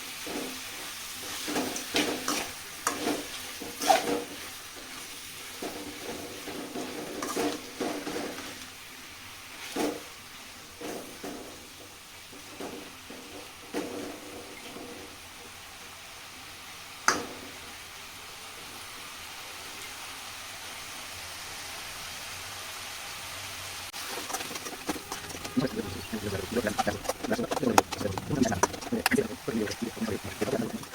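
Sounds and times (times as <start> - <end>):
frying sizzle: 0.0 - 30.9
spoon scraping a pan: 0.1 - 8.6, 24.0 - 30.9.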